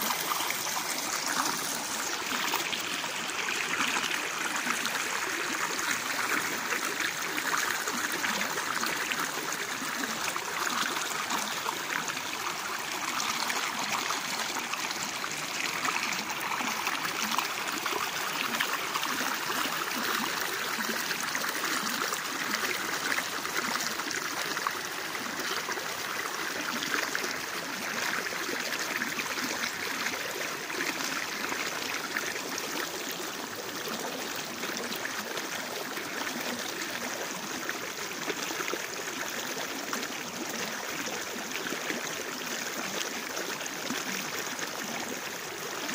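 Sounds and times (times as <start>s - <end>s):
small waterfall rushing: 0.0s - 26.6s.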